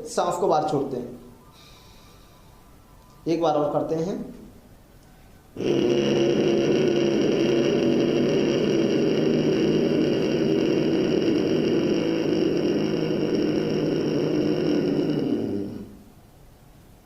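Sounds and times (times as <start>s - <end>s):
slow throat breathing: 1.5s - 2.7s, 5.6s - 16.2s.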